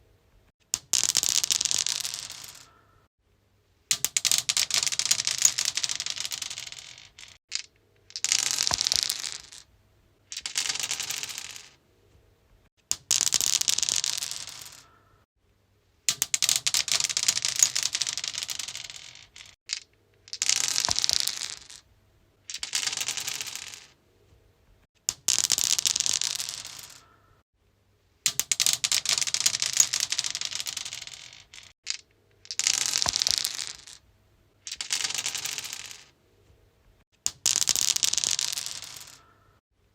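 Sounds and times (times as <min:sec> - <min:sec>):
dice rattling on stone: 0:00.8 - 0:02.7, 0:03.9 - 0:09.7, 0:10.3 - 0:11.8, 0:12.9 - 0:14.9, 0:16.1 - 0:21.8, 0:22.5 - 0:24.0, 0:25.1 - 0:27.0, 0:28.3 - 0:34.0, 0:34.6 - 0:36.1, 0:37.2 - 0:39.4.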